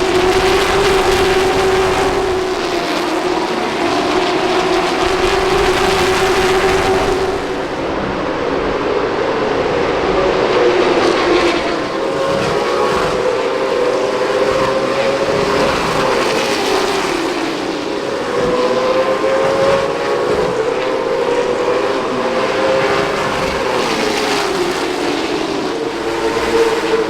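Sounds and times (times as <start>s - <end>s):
race car engines passing: 0.0s - 27.0s.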